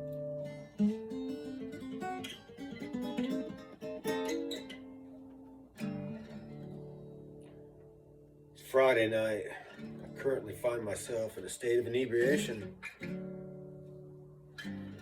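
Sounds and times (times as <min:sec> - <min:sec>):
guitar chord strummed: 0:00.0 - 0:08.5
picked guitar notes: 0:00.0 - 0:15.0.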